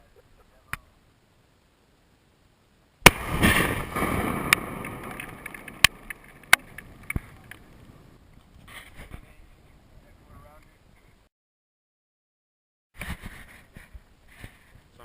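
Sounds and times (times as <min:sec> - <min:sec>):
explosive blast with rumble: 0:03.0 - 0:06.0
sharp cracks: 0:03.0 - 0:08.5.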